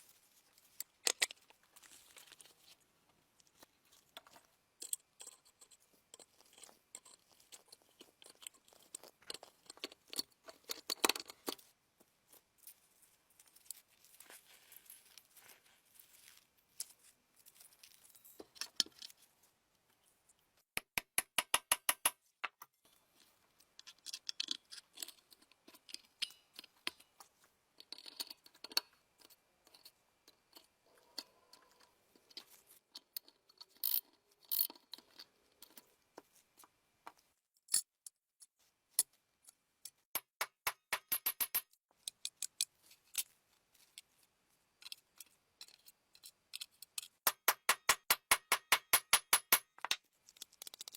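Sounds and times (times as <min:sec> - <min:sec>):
small tools clicking and tapping: 0:00.8 - 0:02.5, 0:03.4 - 0:11.7, 0:20.8 - 0:22.8, 0:23.8 - 0:35.9, 0:37.6 - 0:44.1, 0:44.8 - 0:50.9.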